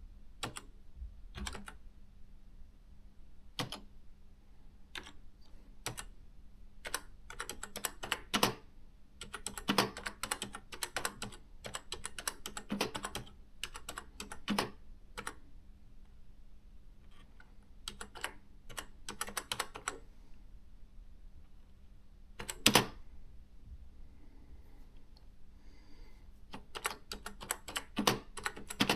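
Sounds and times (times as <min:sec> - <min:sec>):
electronic typewriter typing: 0:01.4 - 0:01.8, 0:06.8 - 0:08.6, 0:09.2 - 0:15.4, 0:17.9 - 0:20.0, 0:22.4 - 0:23.0, 0:26.5 - 0:28.9.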